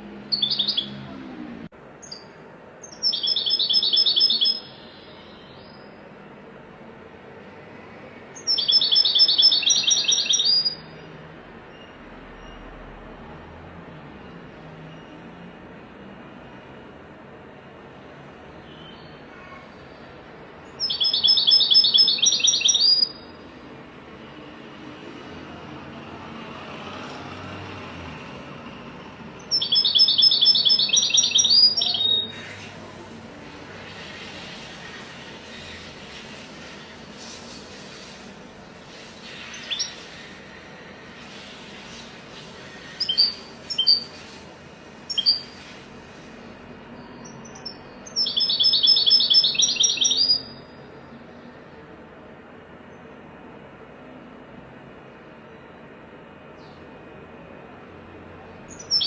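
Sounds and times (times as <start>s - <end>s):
goldfinch chirping: 0.3s - 1.0s, 2.0s - 5.9s, 8.4s - 10.9s, 20.7s - 23.3s, 29.4s - 32.4s, 39.3s - 40.0s, 42.8s - 44.1s, 45.1s - 45.6s, 47.0s - 50.8s, 58.7s - 59.0s.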